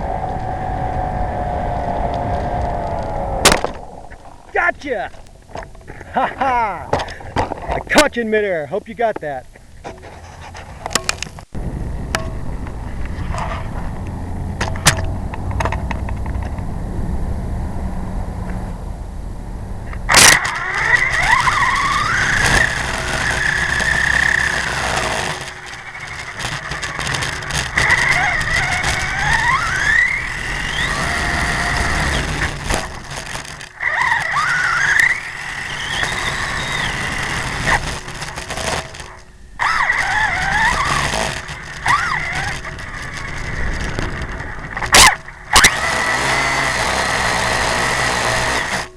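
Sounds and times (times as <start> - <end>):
low rumble: 0.0 - 7.9, 11.5 - 20.1
sharp click: 19.9 - 21.2
model motor whining: 20.1 - 48.9.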